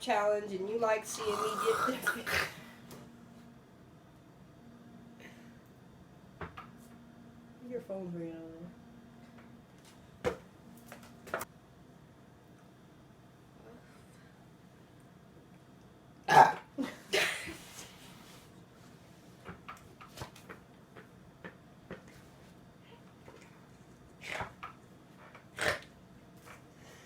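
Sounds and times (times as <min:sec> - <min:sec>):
person burping: 0:01.1 - 0:02.7, 0:16.3 - 0:17.4.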